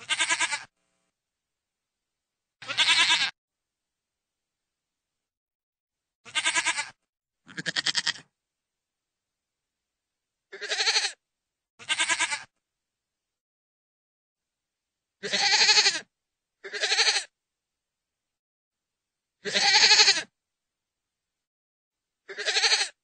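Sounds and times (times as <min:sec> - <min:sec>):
goat bleating: 0:00.0 - 0:00.7, 0:02.6 - 0:03.4, 0:06.2 - 0:08.3, 0:10.5 - 0:11.2, 0:11.8 - 0:12.5, 0:15.2 - 0:17.3, 0:19.4 - 0:20.3, 0:22.3 - 0:23.0.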